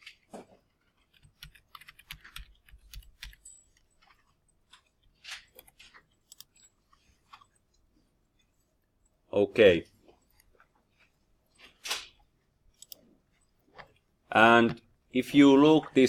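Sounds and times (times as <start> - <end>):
keyboard typing: 0.8 - 7.6, 12.7 - 14.8.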